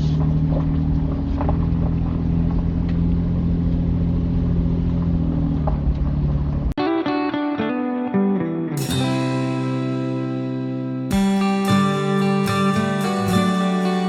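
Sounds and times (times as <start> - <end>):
vehicle engine running: 0.0 - 6.8.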